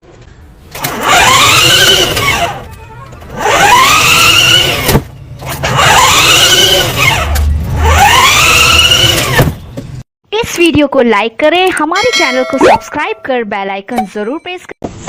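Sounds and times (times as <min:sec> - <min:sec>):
engine revving: 0:00.8 - 0:02.6, 0:03.3 - 0:09.6.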